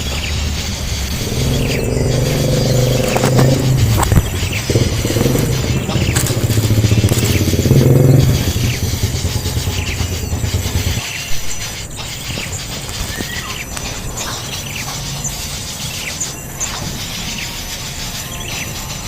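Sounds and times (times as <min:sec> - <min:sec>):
small engine running: 0:00.0 - 0:11.2
high bird chirps: 0:00.9 - 0:15.1.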